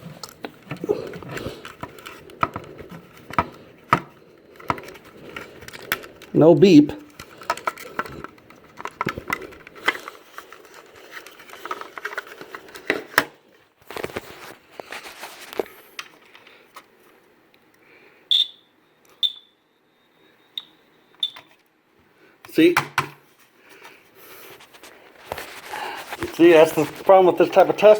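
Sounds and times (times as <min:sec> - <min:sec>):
handling clicks and rustles: 0:00.0 - 0:17.8, 0:24.5 - 0:27.9
smoke alarm chirps: 0:18.3 - 0:21.6.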